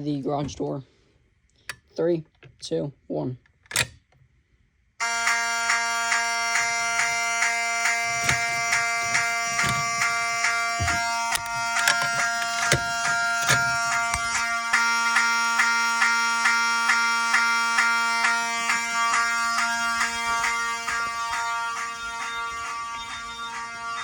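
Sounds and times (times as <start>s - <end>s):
fire alarm horns blaring: 5.0s - 24.0s.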